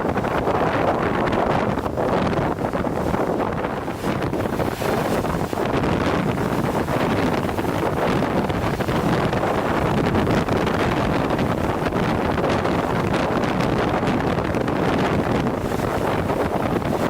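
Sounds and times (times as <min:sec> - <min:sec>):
waves breaking on breakwater: 0:00.0 - 0:17.0
wind buffeting microphone: 0:00.0 - 0:17.0.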